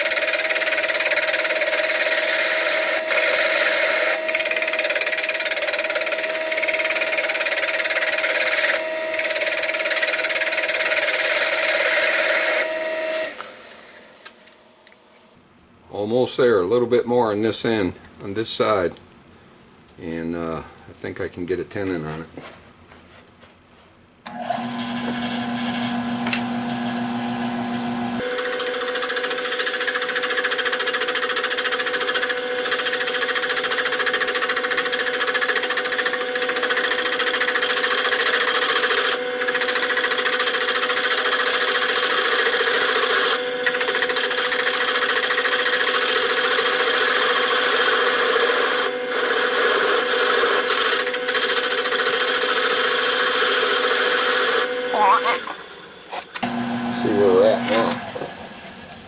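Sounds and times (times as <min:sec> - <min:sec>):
gouge cutting wood: 0:00.0 - 0:14.6, 0:28.2 - 0:56.4
wood lathe motor humming: 0:00.0 - 0:15.0, 0:24.4 - 0:57.2.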